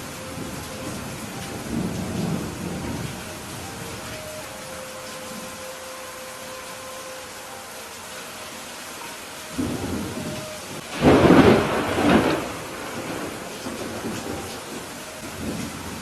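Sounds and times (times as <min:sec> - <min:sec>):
thunder rumbling: 0:00.0 - 0:04.2, 0:09.6 - 0:16.0
steady rain: 0:00.0 - 0:16.0.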